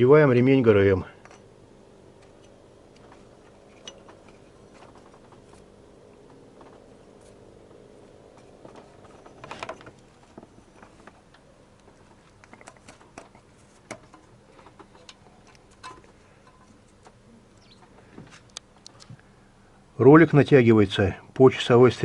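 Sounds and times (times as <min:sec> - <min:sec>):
hands clicking and rustling: 0:02.2 - 0:19.2.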